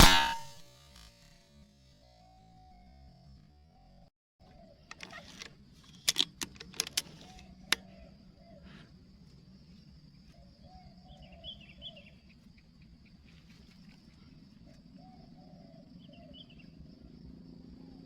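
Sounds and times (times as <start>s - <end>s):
handling clicks: 4.9s - 7.8s
high insect drone: 7.0s - 18.0s
bird chirps: 10.2s - 16.8s.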